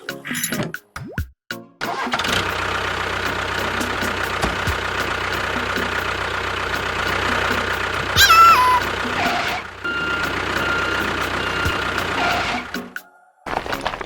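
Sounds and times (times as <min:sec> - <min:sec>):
engine idling: 0:02.1 - 0:12.7.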